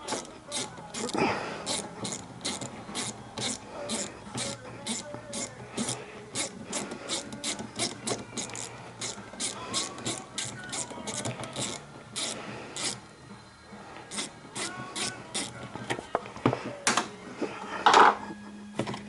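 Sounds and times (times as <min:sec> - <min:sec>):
hand ratchet clicking: 0:00.0 - 0:13.0, 0:14.1 - 0:15.6.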